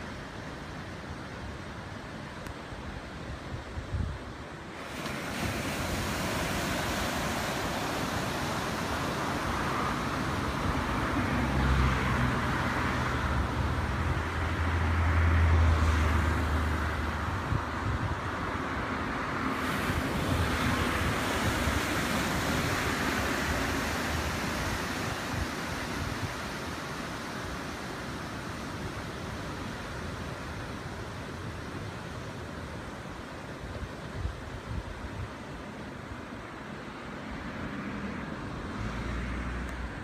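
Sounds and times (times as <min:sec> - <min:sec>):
surf washing onto beach: 0:00.0 - 0:40.0
wind on microphone: 0:02.9 - 0:32.0.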